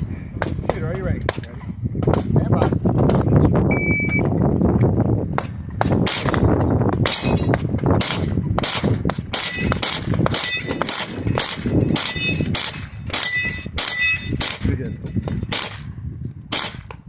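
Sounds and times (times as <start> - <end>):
pistol shots: 5.8 - 15.9, 16.5 - 16.9
steel plates clanging: 9.2 - 15.6.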